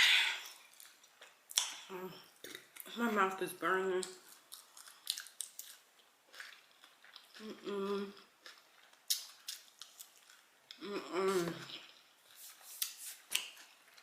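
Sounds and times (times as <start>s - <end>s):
chewing fried chicken: 4.1s - 10.8s
wet mouth clicks and smacks: 9.1s - 10.0s.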